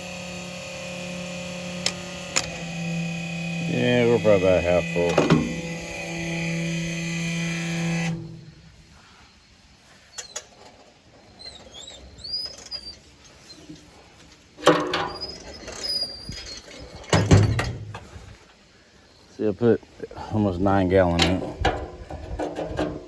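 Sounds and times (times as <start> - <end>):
steady hum: 0.0 - 9.7.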